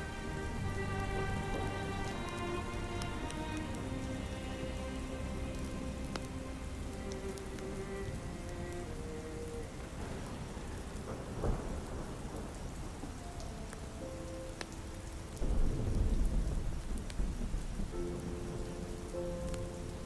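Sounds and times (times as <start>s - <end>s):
small crackles: 0.0s - 20.0s
soft held musical tones: 0.0s - 20.0s
steady rain: 0.0s - 20.0s
thunder rumble: 0.0s - 20.0s
thunder crack: 9.8s - 13.1s, 15.4s - 18.6s.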